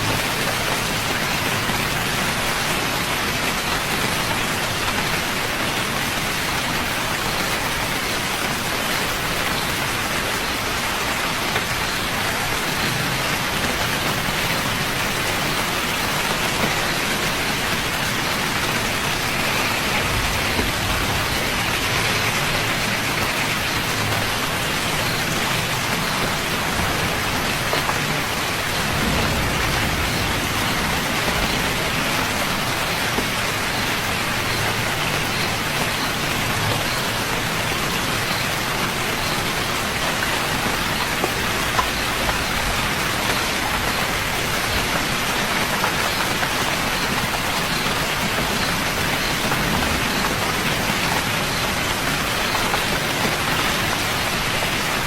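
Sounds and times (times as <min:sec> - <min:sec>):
steady rain falling: 0:00.0 - 0:55.0
low rumble: 0:28.7 - 0:32.4.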